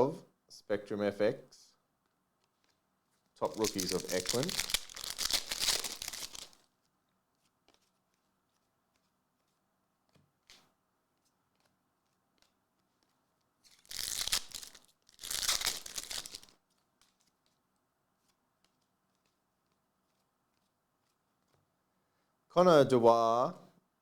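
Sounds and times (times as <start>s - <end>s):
foil wrapper tearing: 3.4s - 6.6s, 13.7s - 16.5s
wrapper crinkling: 3.4s - 6.7s, 13.7s - 17.3s.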